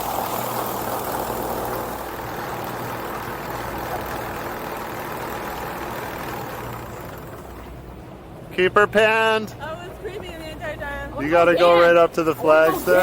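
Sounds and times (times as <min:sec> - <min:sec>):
coaster machinery hum and rumble: 0:00.0 - 0:08.8.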